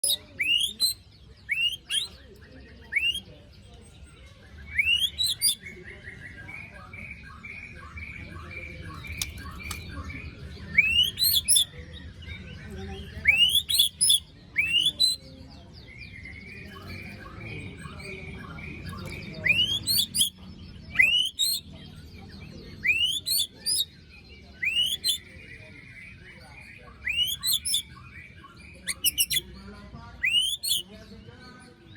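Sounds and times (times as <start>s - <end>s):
bird whistling: 0.0s - 2.2s, 2.9s - 3.3s, 4.7s - 5.8s, 10.7s - 11.8s, 13.2s - 15.2s, 19.2s - 21.7s, 22.8s - 23.9s, 24.6s - 25.4s, 26.9s - 28.0s, 28.7s - 29.5s, 30.2s - 30.9s
faint repeated chirping: 0.0s - 3.3s, 4.6s - 15.2s, 16.0s - 21.8s, 22.8s - 29.6s, 30.2s - 30.9s.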